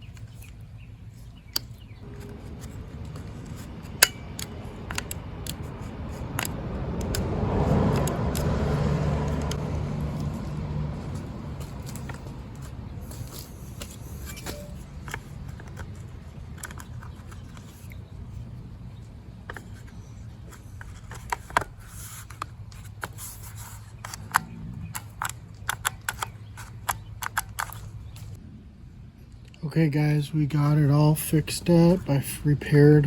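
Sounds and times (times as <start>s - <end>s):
low hum: 0.0s - 21.8s, 22.6s - 33.0s
sharp clicks and scrapes: 1.3s - 18.4s, 19.5s - 28.4s.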